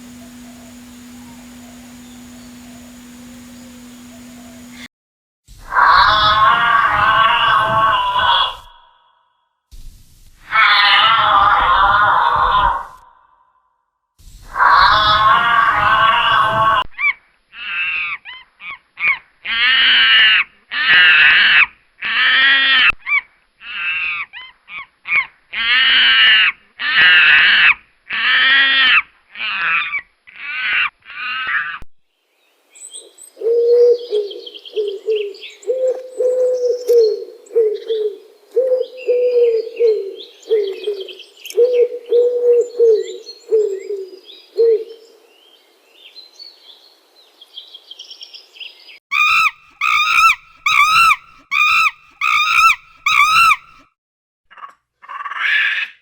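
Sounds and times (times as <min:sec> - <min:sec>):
birds chirping: 0:00.0 - 0:04.9, 0:49.1 - 0:53.8
low repeating call: 0:00.0 - 0:04.9, 0:49.1 - 0:53.8
harsh animal calls: 0:49.1 - 0:53.8.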